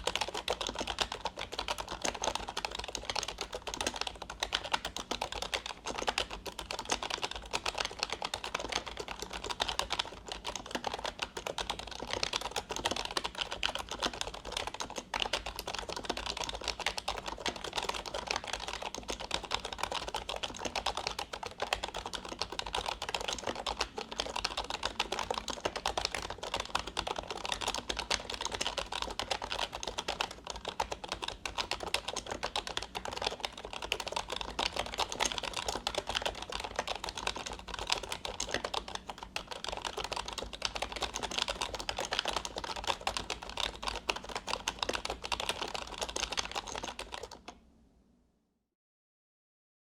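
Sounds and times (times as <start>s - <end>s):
membrane keyboard typing: 0.0s - 47.6s.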